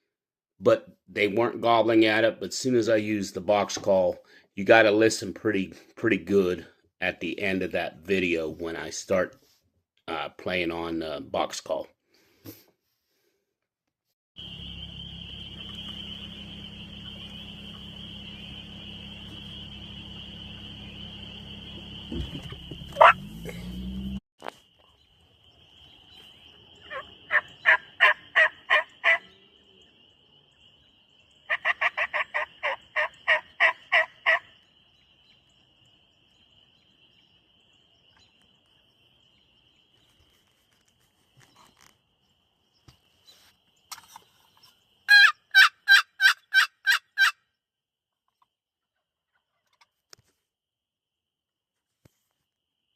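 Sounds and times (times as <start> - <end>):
tree frogs trilling: 14.4 - 47.4
turkey call yelping: 22.2 - 23.4, 26.8 - 29.4, 31.5 - 34.6, 45.1 - 47.4.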